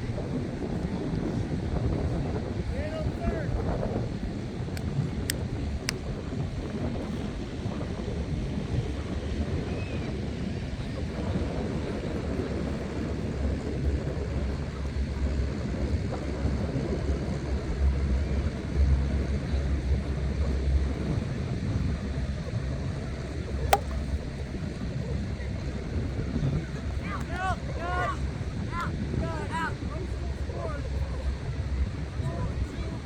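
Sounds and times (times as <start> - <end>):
wind buffeting microphone: 0.0 - 33.0
sharp click: 23.7 - 24.1.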